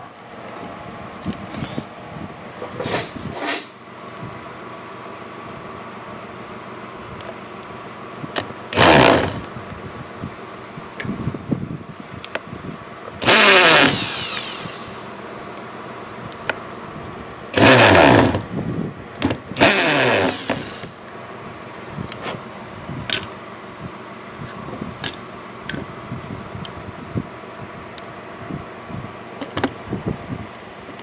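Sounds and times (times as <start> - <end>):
power drill spinning: 8.8 - 9.5, 13.2 - 15.2, 17.6 - 18.5, 19.6 - 21.0.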